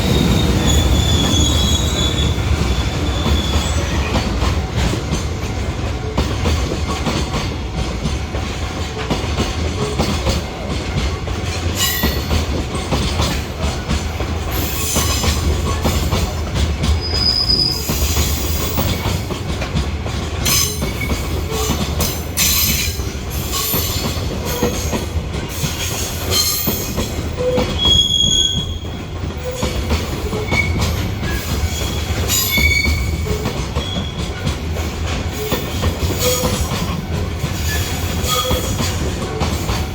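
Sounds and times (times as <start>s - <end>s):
high-pitched wheel squeals: 0.0s - 4.1s, 17.0s - 18.6s, 26.4s - 29.8s, 30.4s - 34.2s
train wheels rumbling on rail: 0.0s - 39.9s.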